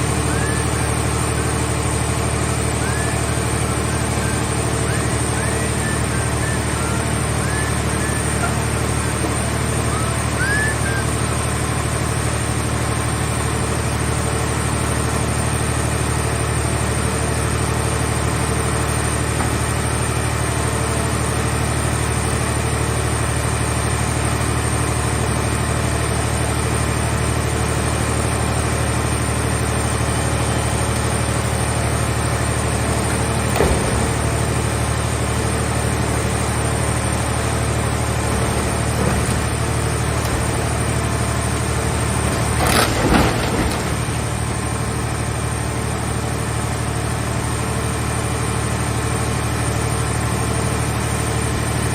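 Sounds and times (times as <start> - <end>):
baler engine running steadily: 0.0 - 51.9.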